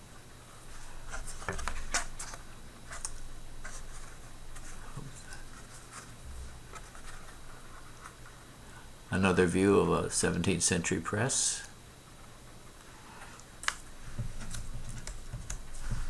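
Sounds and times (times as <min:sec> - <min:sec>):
cards sliding and scraping: 0:00.7 - 0:08.4.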